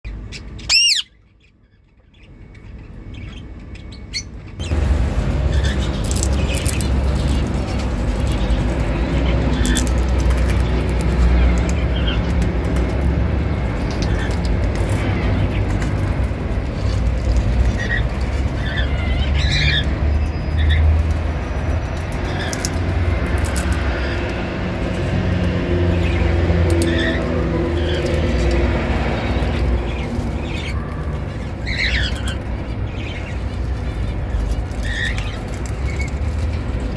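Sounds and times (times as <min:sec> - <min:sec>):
parrot chirp: 0:00.1 - 0:04.8, 0:17.6 - 0:20.8, 0:26.0 - 0:36.2
low rumbling background noise: 0:00.1 - 0:36.9
parrot squawking: 0:00.3 - 0:01.2, 0:16.8 - 0:20.8, 0:26.0 - 0:36.1
seeds being cracked: 0:05.8 - 0:12.8, 0:22.4 - 0:23.9.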